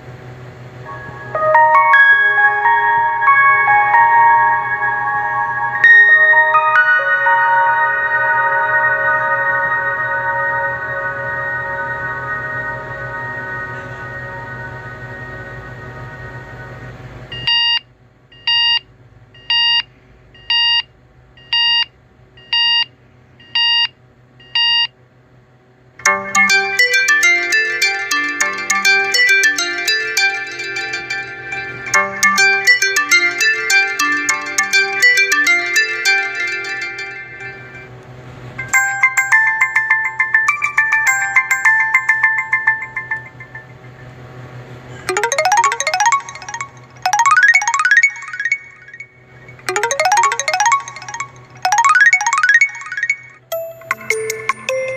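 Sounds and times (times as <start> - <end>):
held synth chord: 0.0 - 17.3, 26.0 - 54.9
electronic beep ringtone: 26.0 - 37.9, 38.6 - 54.9.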